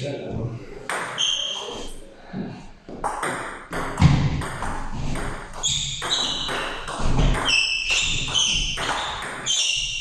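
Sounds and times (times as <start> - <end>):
table tennis ball hits: 2.9 - 9.8.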